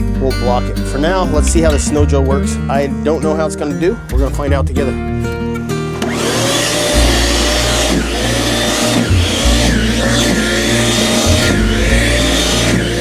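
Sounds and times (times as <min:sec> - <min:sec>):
electric snow shovel motor whine: 0:06.0 - 0:13.0.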